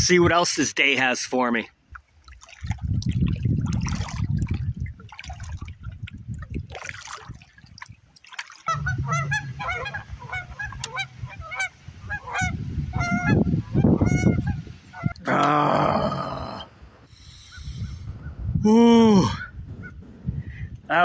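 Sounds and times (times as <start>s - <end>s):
low rumble: 8.7s - 13.4s
geese honking: 8.7s - 15.1s.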